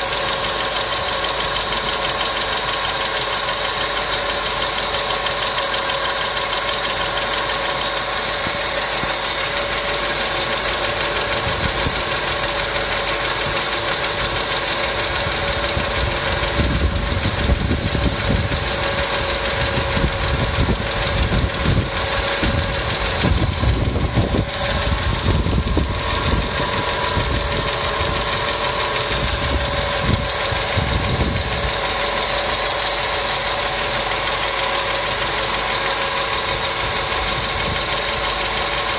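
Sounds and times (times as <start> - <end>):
car engine running: 0.0 - 38.9
fast even engine ticking: 0.0 - 38.9
low rumble: 15.3 - 33.1.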